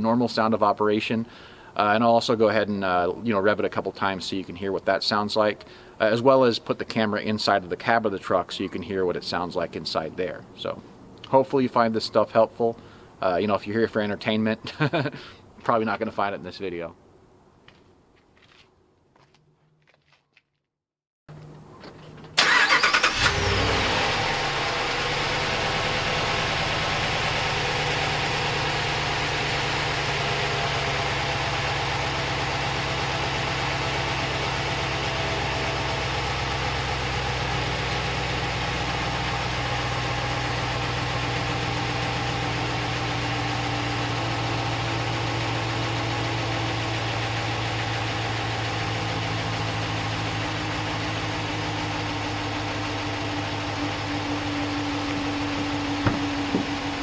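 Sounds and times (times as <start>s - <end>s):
truck engine starting and idling: 21.3s - 57.0s.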